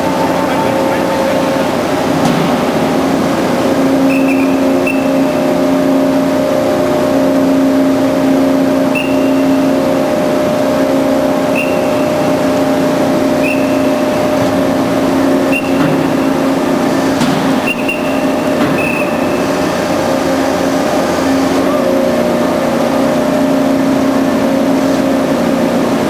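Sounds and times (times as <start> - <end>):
band saw motor hum: 0.0 - 26.0
short high-pitched tones: 8.8 - 9.8, 11.5 - 12.6.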